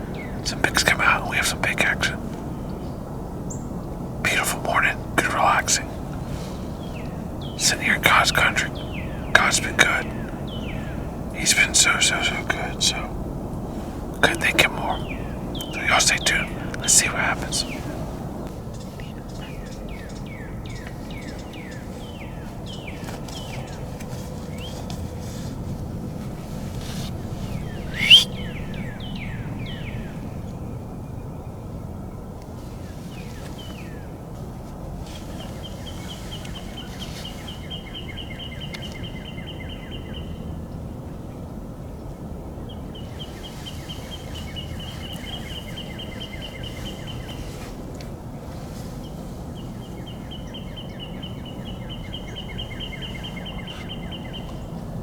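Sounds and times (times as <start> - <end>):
songbirds whistling: 0.0 - 31.7, 35.0 - 40.5, 42.7 - 55.0
low background rumble: 0.0 - 55.0
rapid bird trill: 14.2 - 30.9.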